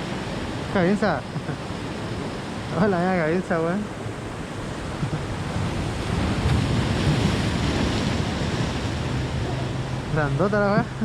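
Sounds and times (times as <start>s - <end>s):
rushing wind: 0.0s - 11.0s
waves: 0.0s - 11.0s
wind buffeting microphone: 3.9s - 11.0s.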